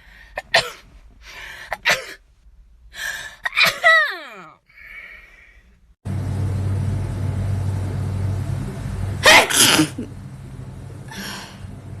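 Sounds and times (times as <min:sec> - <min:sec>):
low hum: 0:05.6 - 0:12.0
woman sneezing: 0:09.2 - 0:10.0
breathy rush: 0:11.0 - 0:11.8.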